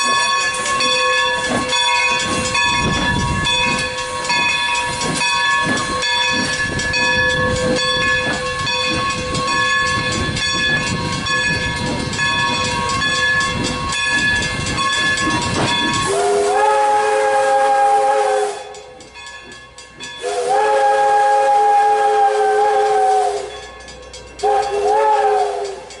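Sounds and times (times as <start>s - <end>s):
rhythmic locomotive pulsing: 0.0s - 26.0s
steam whistle blasts: 16.0s - 18.9s, 20.2s - 23.6s, 24.4s - 26.0s.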